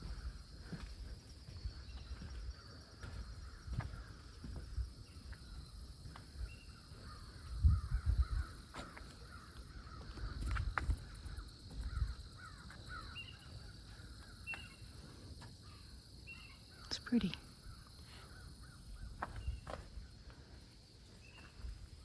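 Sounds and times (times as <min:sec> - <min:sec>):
lakeside ambience: 0:00.0 - 0:22.0
crow-like bird caws: 0:07.0 - 0:10.4, 0:11.3 - 0:14.5.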